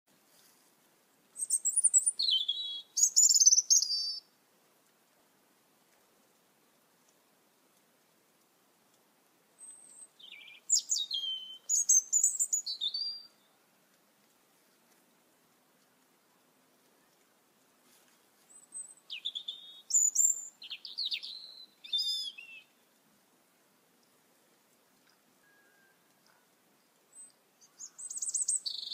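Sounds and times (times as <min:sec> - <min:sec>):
faint background noise: 0:00.1 - 0:28.9
songbird singing: 0:01.3 - 0:04.4, 0:08.9 - 0:15.0, 0:15.8 - 0:23.0, 0:23.9 - 0:28.9.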